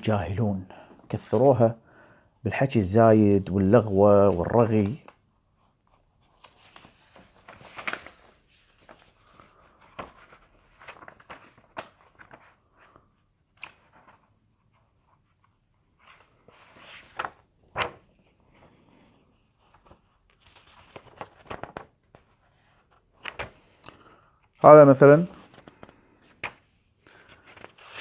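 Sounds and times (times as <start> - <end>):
pages turning and rustling: 5.8 - 24.0, 25.2 - 28.0.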